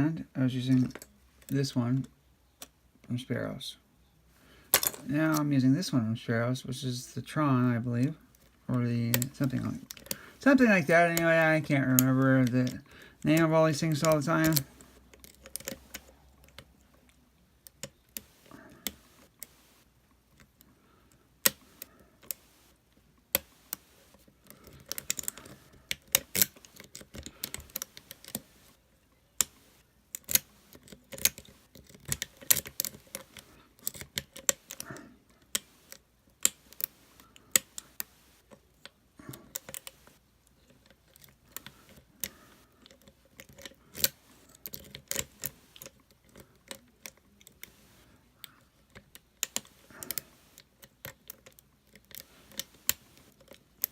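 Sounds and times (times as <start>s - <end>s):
lock pick clicking and scratching: 8.3s - 53.9s.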